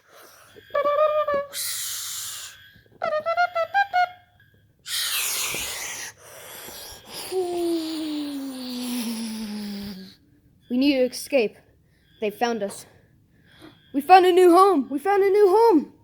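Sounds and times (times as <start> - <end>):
child making mouth sound effects: 0.7 - 4.2, 4.9 - 6.1, 6.7 - 10.2.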